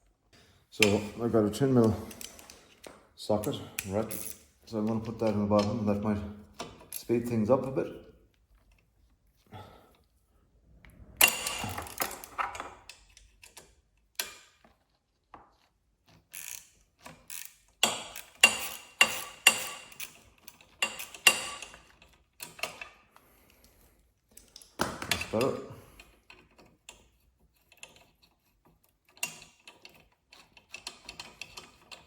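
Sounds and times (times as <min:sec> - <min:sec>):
socket ratchet clicking: 0:17.3 - 0:21.8.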